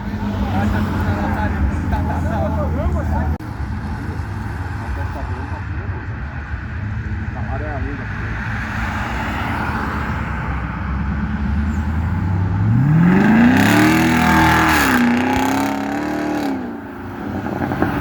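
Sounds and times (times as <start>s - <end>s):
car engine revving: 0.0s - 18.0s.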